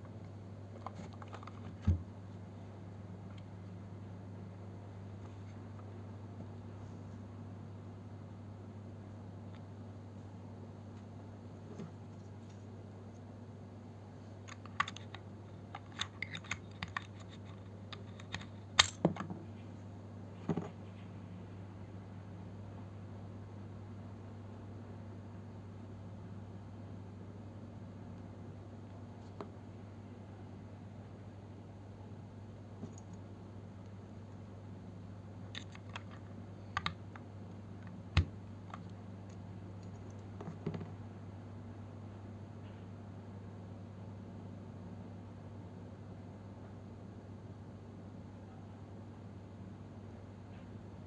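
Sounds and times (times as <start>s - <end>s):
steady low hum: 0.0s - 51.0s
clicks and taps handling keyboard: 35.6s - 37.0s.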